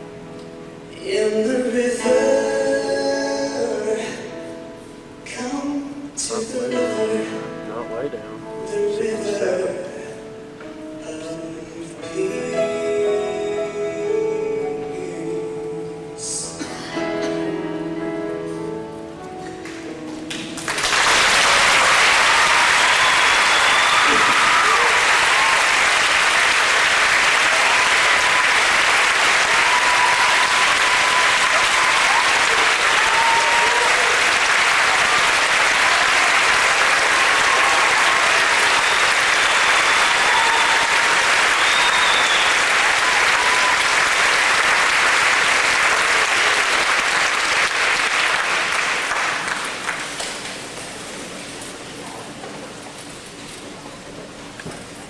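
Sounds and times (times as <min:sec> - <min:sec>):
large audience applauding: 0:19.6 - 0:50.7.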